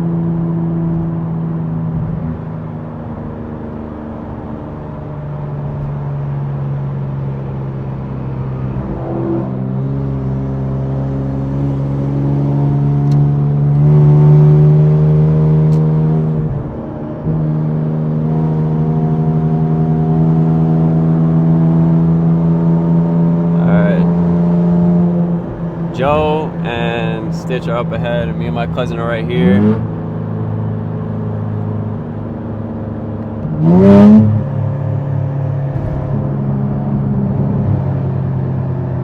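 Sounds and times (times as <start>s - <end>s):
car engine running from inside cabin: 18.3s - 38.4s.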